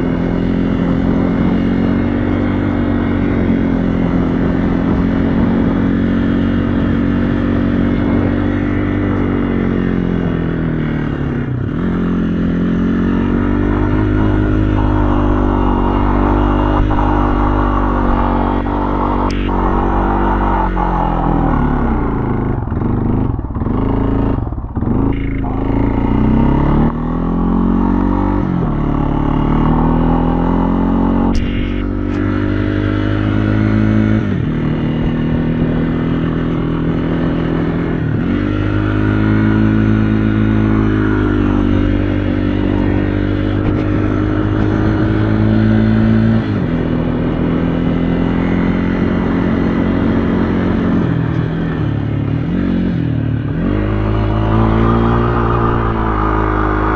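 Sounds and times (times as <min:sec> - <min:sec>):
vehicle engine running: 0:00.0 - 0:47.6
sharp click: 0:31.3 - 0:32.3.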